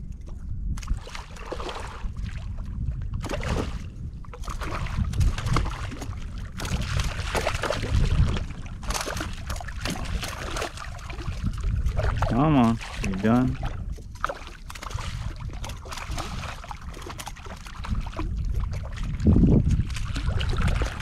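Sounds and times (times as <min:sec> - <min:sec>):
water splashing and sloshing: 0:00.0 - 0:21.0
wind rumble on microphone: 0:00.0 - 0:21.0.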